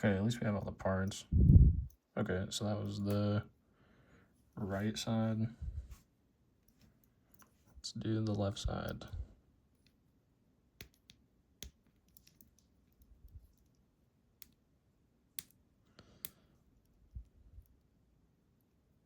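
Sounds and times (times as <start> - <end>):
small metal parts clicking: 10.8 - 13.8.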